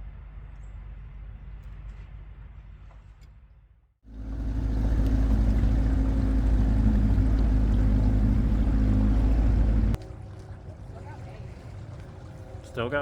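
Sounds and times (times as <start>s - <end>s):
boat motor running: 4.1s - 13.0s.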